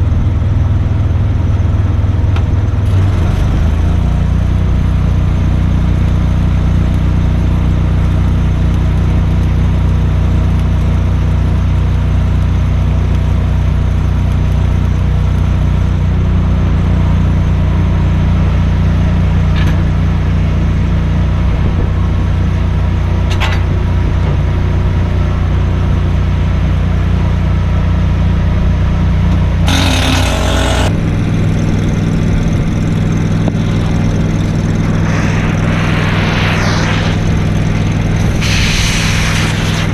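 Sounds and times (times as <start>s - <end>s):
welding machine engine running: 1.6s - 17.5s, 29.4s - 35.3s
short hissing burst: 34.5s - 39.9s.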